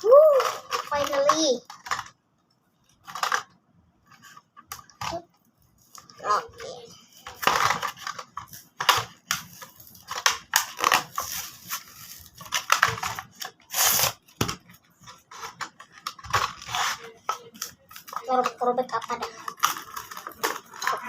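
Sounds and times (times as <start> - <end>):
blister packaging being torn open: 7.5 - 14.2.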